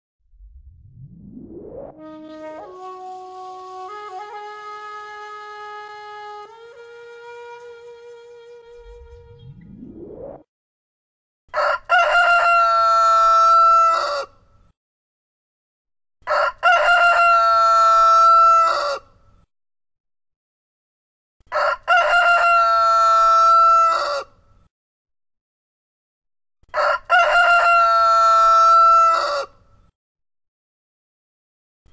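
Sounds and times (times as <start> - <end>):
rooster crowing: 11.5 - 14.3, 16.2 - 19.0, 21.5 - 24.3, 26.7 - 29.5.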